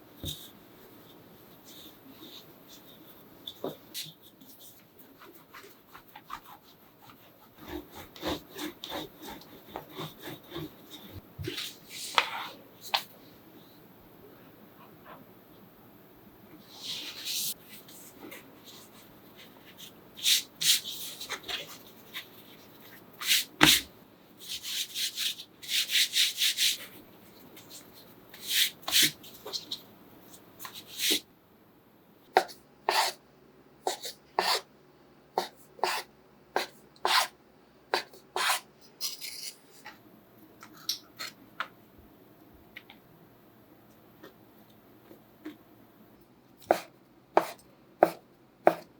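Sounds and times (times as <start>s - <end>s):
dough rubbing on a board: 5.1s - 11.2s.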